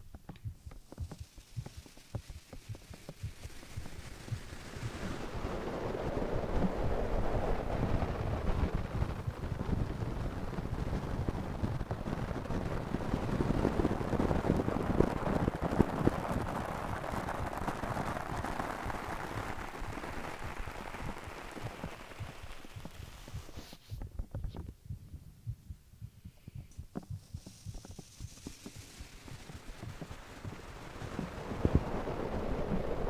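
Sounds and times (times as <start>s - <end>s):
heartbeat thumping: 0.0s - 5.5s, 17.2s - 31.9s.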